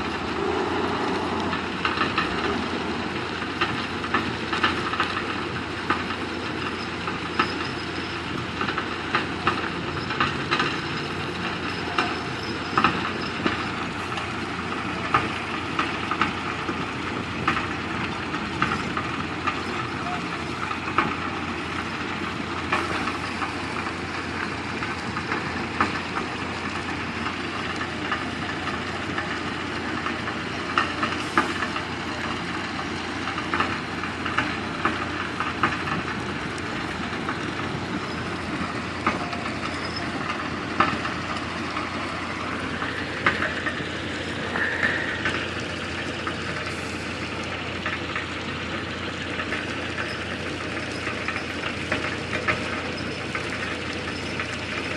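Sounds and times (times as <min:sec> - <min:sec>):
diesel machinery running: 0:00.0 - 0:54.9.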